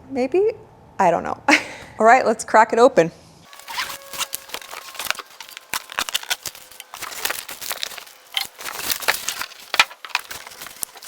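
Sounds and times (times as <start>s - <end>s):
packaging crinkling and tearing: 3.5s - 11.0s
rustles and scrapes: 3.5s - 11.0s.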